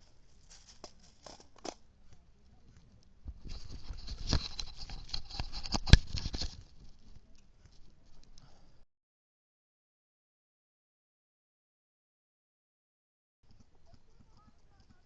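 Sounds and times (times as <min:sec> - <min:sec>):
rustling and crackling: 0:00.0 - 0:08.6.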